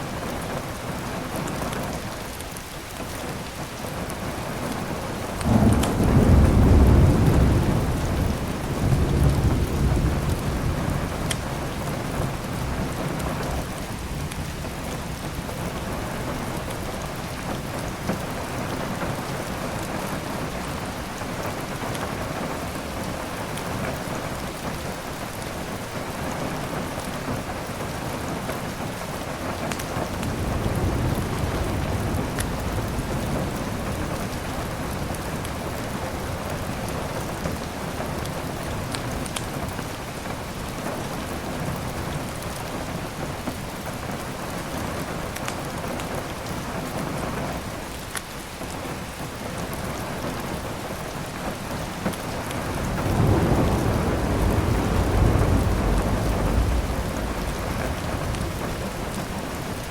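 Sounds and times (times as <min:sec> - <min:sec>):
heavy rain: 0:00.0 - 0:59.9
thunder rumbling: 0:05.2 - 0:22.6, 0:29.9 - 0:39.2, 0:51.7 - 0:59.9.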